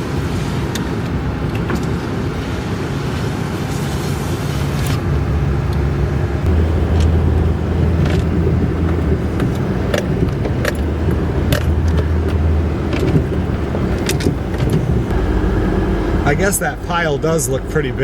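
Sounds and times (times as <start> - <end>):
vehicle engine running under load: 0.0 - 18.0
light clicks and rattles: 7.8 - 15.1.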